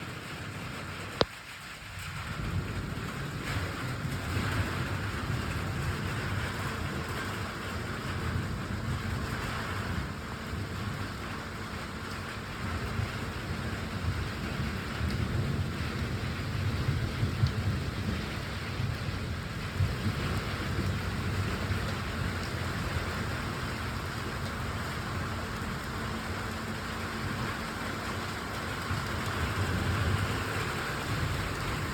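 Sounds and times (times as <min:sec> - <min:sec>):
steady rain falling: 0:00.0 - 0:31.9
low rumble: 0:28.5 - 0:31.9.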